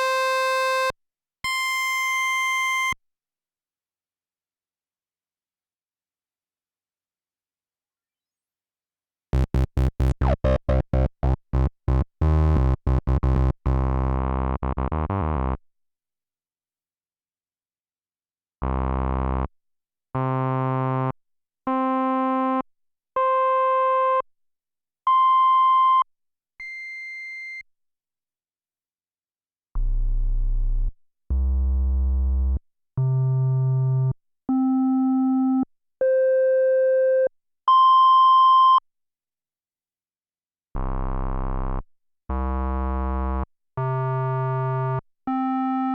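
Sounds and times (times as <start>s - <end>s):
synthesizer notes: 9.4s - 11.7s.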